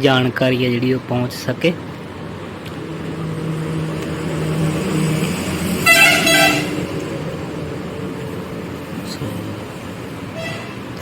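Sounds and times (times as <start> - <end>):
motor vehicle passing: 0.6 - 11.0
vehicle horn toots: 2.8 - 7.5, 10.3 - 11.0.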